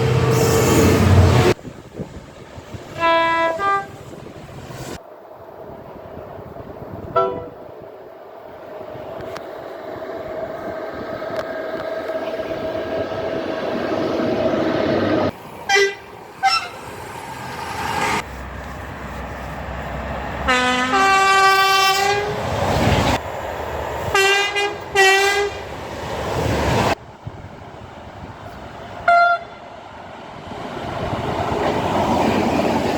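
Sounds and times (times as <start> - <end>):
train rumble: 0.0 - 32.9
two-tone train horn: 3.0 - 4.0, 7.2 - 7.7, 15.7 - 16.8, 20.5 - 22.4, 24.1 - 25.6, 29.0 - 29.6.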